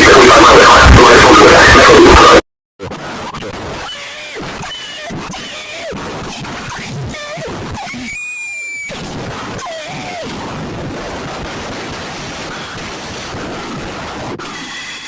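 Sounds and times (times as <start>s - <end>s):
warbling alert tones: 0.0s - 2.4s
loud static hiss: 0.0s - 15.0s.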